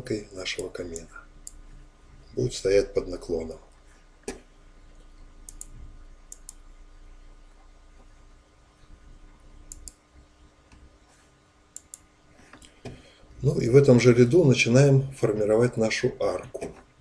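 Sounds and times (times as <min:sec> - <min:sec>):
low steady hum: 0:00.0 - 0:17.0
faint sharp clicks: 0:03.7 - 0:06.7, 0:09.6 - 0:10.0, 0:11.7 - 0:13.1.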